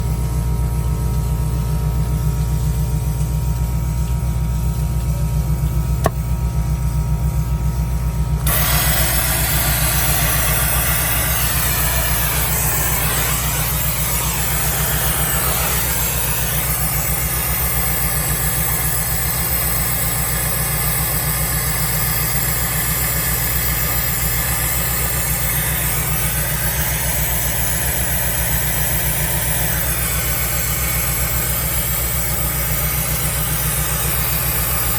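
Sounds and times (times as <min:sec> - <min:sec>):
diesel engine idling: 0:08.4 - 0:31.8
loud rushing hiss: 0:08.5 - 0:18.4.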